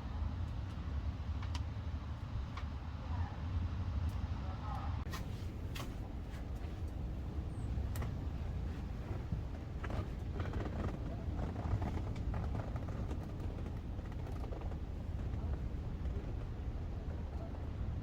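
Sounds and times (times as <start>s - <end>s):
light clicks and rustles: 5.1s - 7.1s, 7.7s - 17.6s
wind buffeting microphone: 5.5s - 18.0s.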